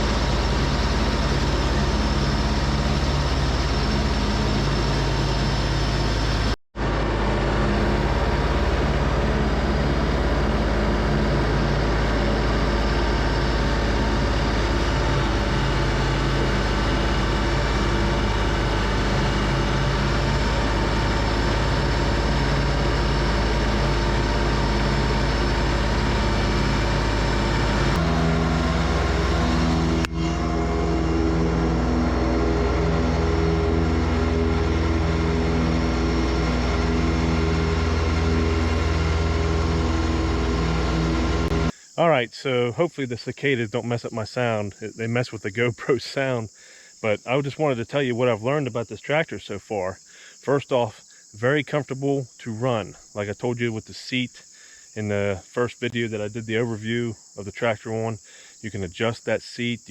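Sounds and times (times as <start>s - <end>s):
tractor diesel engine mowing: 0.0s - 46.4s.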